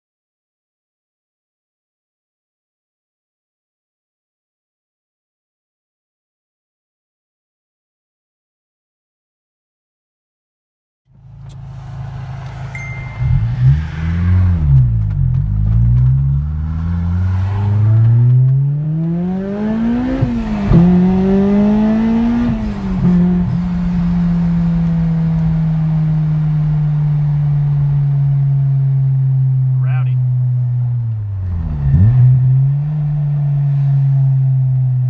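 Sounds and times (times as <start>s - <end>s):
car engine accelerating: 11.1s - 35.0s.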